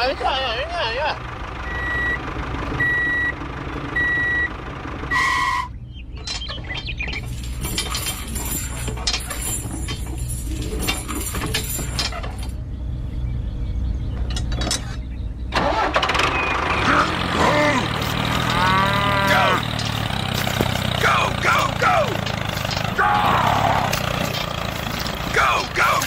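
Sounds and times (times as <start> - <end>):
low motor hum: 0.0 - 26.0
reversing alarm beeping: 1.6 - 2.2, 2.8 - 3.4, 4.0 - 5.7
dense crackling rattling noise: 18.0 - 26.0.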